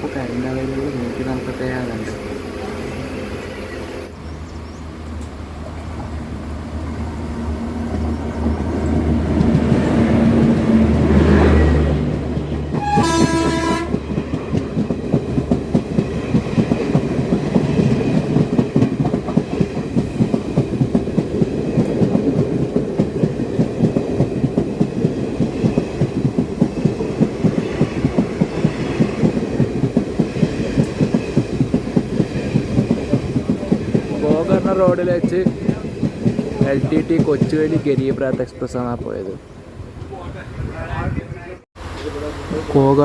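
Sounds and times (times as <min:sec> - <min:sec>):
train wheels clacking over rail joints: 0:12.4 - 0:39.1
locomotive horn: 0:12.7 - 0:14.0.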